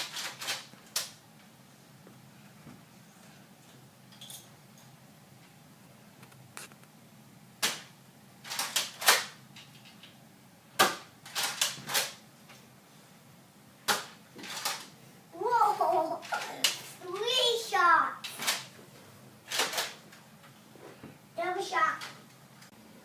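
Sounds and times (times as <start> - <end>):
toy blaster plastic clacks: 19.5 - 20.0.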